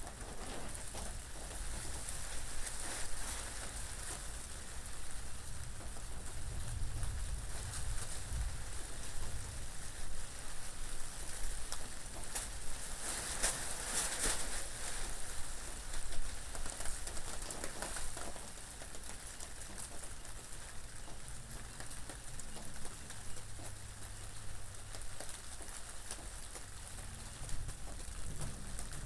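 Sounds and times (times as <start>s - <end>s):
steady rain: 0.0s - 29.0s
low wind rumble: 5.4s - 10.5s, 27.0s - 29.0s.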